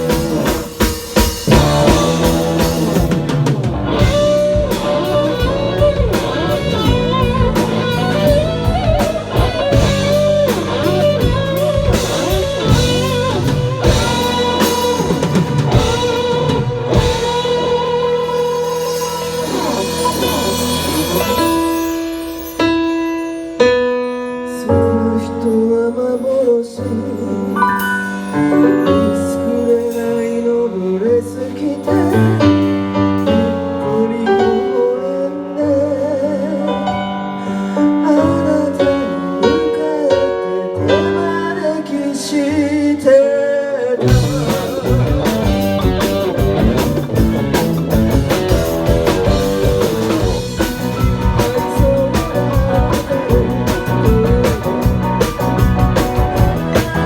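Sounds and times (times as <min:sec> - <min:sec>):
sustained keyboard chords: 0:00.0 - 0:31.1, 0:44.1 - 0:57.0
drums: 0:00.0 - 0:57.0
melody line: 0:01.5 - 0:31.1.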